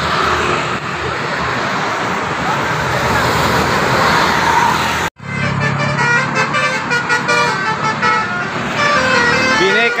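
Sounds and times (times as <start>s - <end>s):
passing bus road noise: 0.0s - 10.0s
musical bus air horn: 5.2s - 10.0s.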